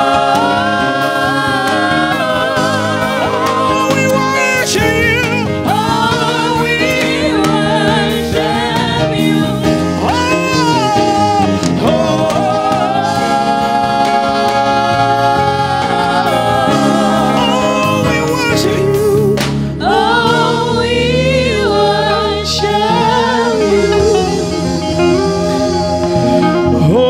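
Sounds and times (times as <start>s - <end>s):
person singing with vibrato: 0.0s - 27.0s
sustained instrumental accompaniment: 0.0s - 27.0s.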